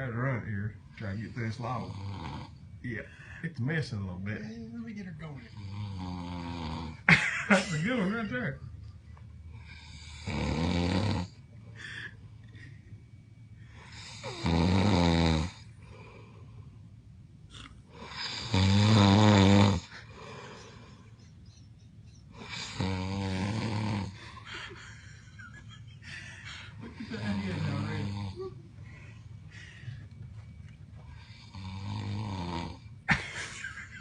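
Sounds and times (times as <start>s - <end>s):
quiet breathing: 0.7s - 3.8s, 11.2s - 14.4s, 15.5s - 18.6s, 19.8s - 32.1s
man snoring loudly: 1.5s - 2.6s, 5.5s - 7.1s, 9.6s - 11.4s, 13.8s - 15.7s, 17.9s - 20.9s, 22.4s - 24.4s, 26.9s - 28.4s, 31.2s - 32.9s.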